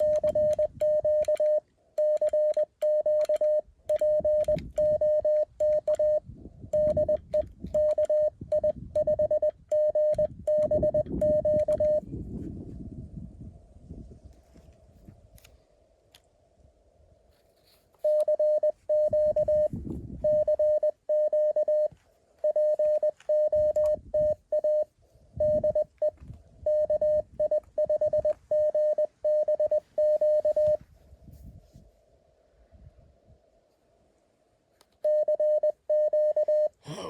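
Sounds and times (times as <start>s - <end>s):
morse code tone: 0.0s - 12.1s, 18.0s - 30.8s, 35.1s - 36.8s.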